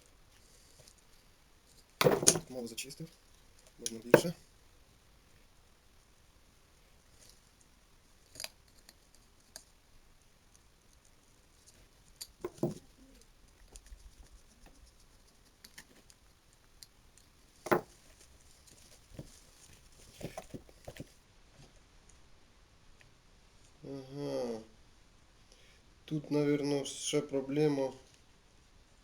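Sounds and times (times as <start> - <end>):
hand tools clicking on wire: 1.7 - 4.4, 8.2 - 9.7.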